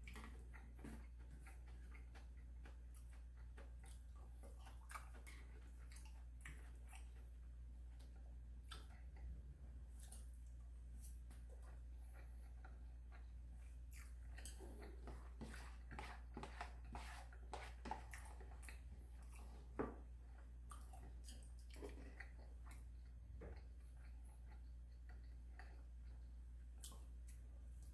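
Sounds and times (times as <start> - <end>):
chewing clicks and smacks: 0.0 - 9.4, 20.6 - 27.9.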